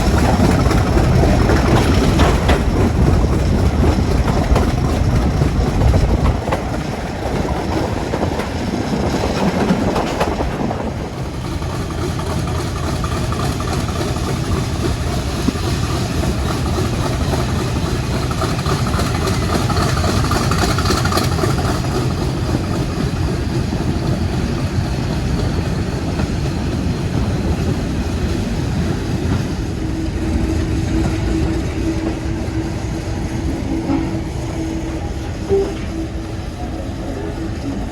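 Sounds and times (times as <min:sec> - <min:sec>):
train wheels clicking over rail joints: 0:00.0 - 0:37.9
steady tone: 0:29.6 - 0:37.9.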